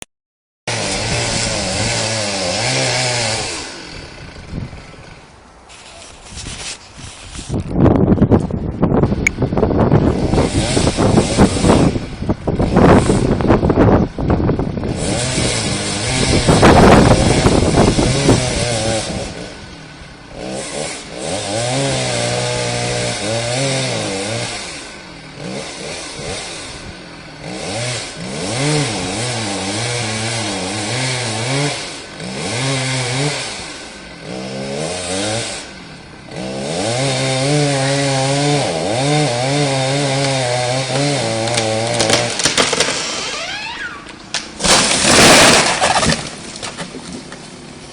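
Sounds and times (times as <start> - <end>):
tree creaking: 0.7 - 47.7.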